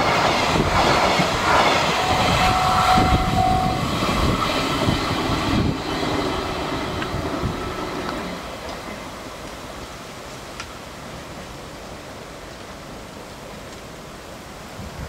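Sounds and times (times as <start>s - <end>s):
freight train rumbling past: 0.0s - 10.3s
steady squeal: 0.8s - 8.5s.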